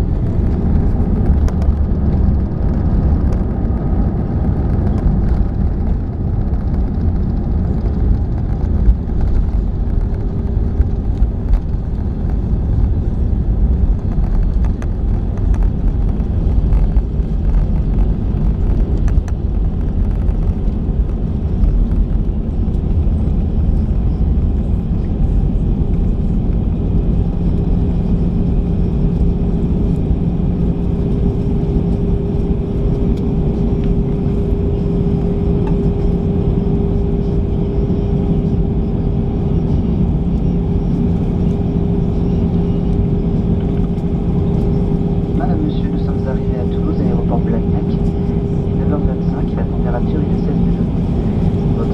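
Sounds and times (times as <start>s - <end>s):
airplane cabin low rumble: 0.0s - 51.9s
faint engine hum: 0.0s - 51.9s.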